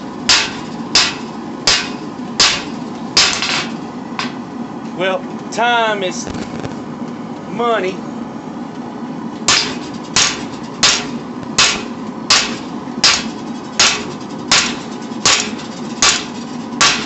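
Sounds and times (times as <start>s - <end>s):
hammer striking steel on anvil: 0.3s - 4.4s, 9.5s - 17.0s.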